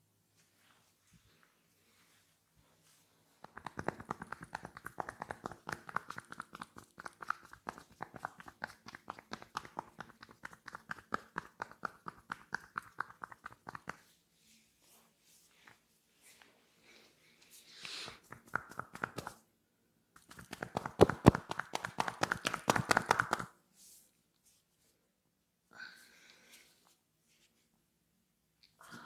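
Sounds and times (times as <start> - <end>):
hands tapping on head: 3.4 - 14.0, 17.9 - 19.4, 20.2 - 23.5.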